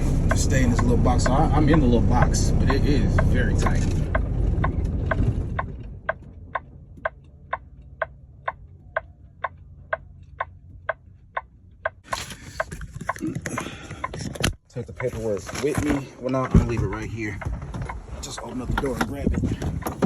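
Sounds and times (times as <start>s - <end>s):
truck engine idling: 0.0s - 14.0s
turn signal ticking: 0.0s - 20.0s.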